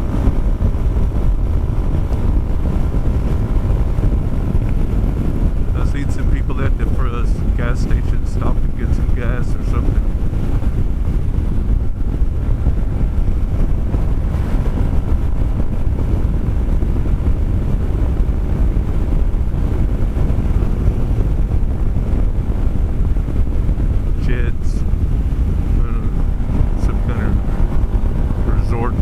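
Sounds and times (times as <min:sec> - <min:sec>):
scooter engine drone: 0:00.0 - 0:29.0
wind buffeting microphone: 0:00.0 - 0:29.0.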